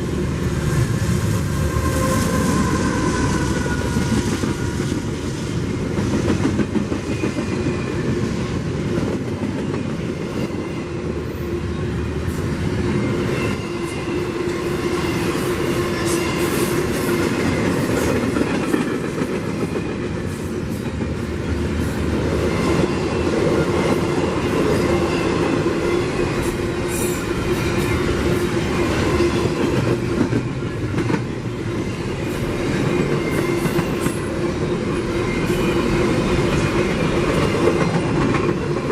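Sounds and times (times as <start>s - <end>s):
train wheels clacking over rails: 0.0s - 11.4s, 12.2s - 38.9s.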